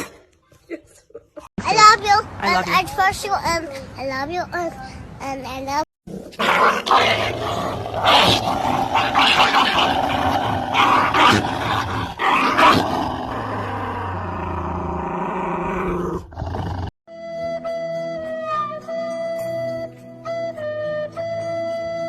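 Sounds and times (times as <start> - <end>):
dog growling: 6.1 - 16.9.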